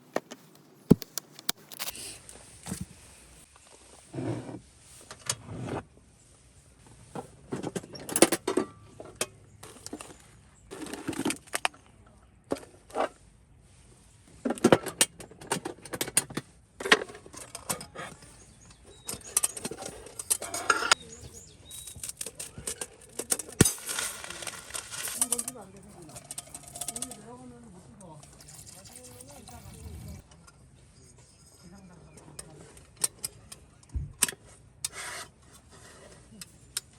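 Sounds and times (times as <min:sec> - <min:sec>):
small objects clinking and rustling: 0:07.5 - 0:11.9, 0:16.8 - 0:30.2.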